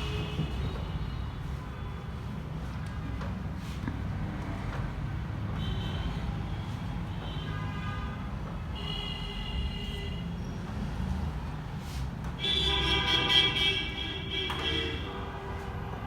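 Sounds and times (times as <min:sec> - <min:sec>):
vehicle horns honking: 0:12.4 - 0:16.0.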